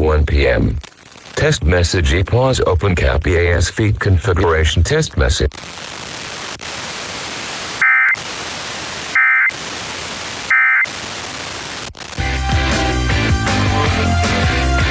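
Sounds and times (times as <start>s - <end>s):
radio hiss: 0.0s - 12.2s
radio music: 1.4s - 14.9s
buzzy digital tone bursts: 5.6s - 12.1s.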